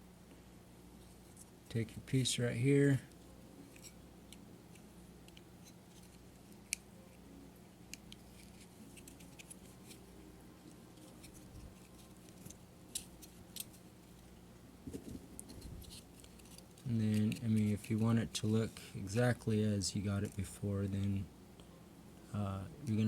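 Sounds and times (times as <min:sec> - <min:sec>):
faint low hum: 0:00.0 - 0:23.0.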